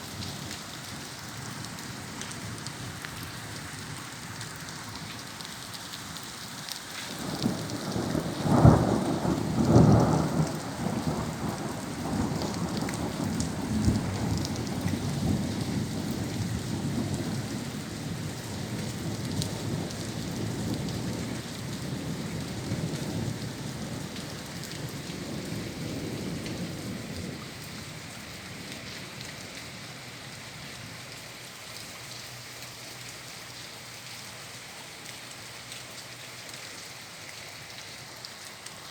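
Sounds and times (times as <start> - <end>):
heavy rain falling: 0.0 - 38.9
thunder cracking and rumbling: 7.2 - 17.6.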